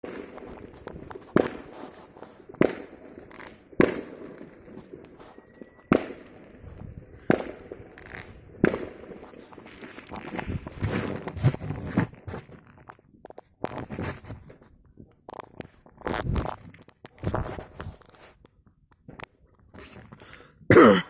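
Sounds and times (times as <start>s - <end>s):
fireworks bangs with echo: 0.0s - 11.3s.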